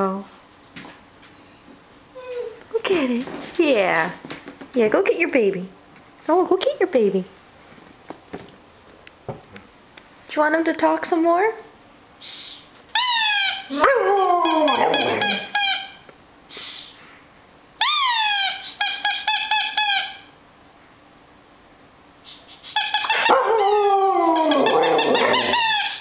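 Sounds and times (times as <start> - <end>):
husky howling and whining: 13.6 - 15.6, 23.1 - 26.0
talking toy calls: 17.8 - 20.3.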